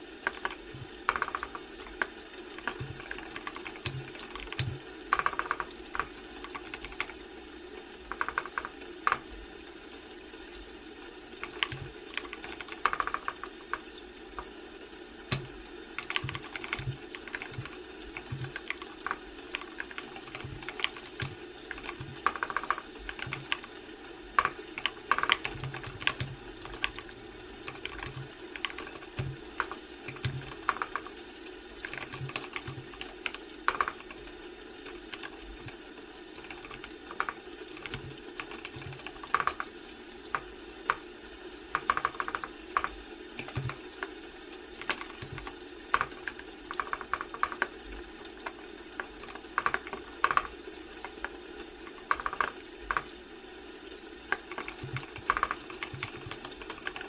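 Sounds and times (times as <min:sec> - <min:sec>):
keyboard key clicks: 0:00.3 - 0:07.2, 0:08.1 - 0:09.3, 0:11.4 - 0:14.5, 0:15.3 - 0:23.7, 0:24.4 - 0:31.1, 0:31.9 - 0:34.2, 0:34.9 - 0:39.7, 0:41.7 - 0:44.1, 0:44.8 - 0:47.7, 0:49.0 - 0:53.1.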